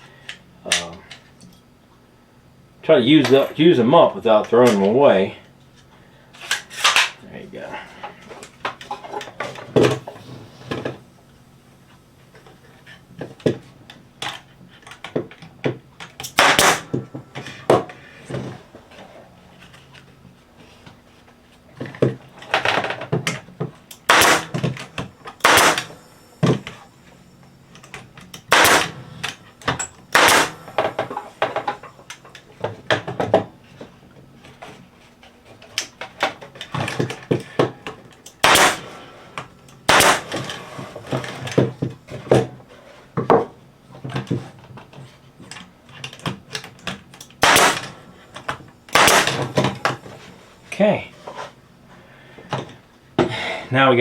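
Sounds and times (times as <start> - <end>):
nail gun firing: 16.2 - 17.0, 23.9 - 26.0, 28.4 - 29.4, 30.1 - 31.8, 38.3 - 39.0, 39.9 - 40.6, 47.3 - 48.0, 48.9 - 50.0.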